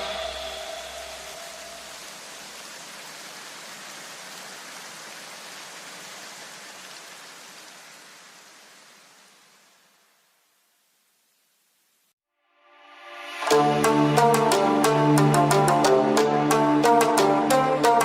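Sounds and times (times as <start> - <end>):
electronic music: 0.0 - 1.9, 13.0 - 18.0
steady hiss of noise: 0.0 - 12.2.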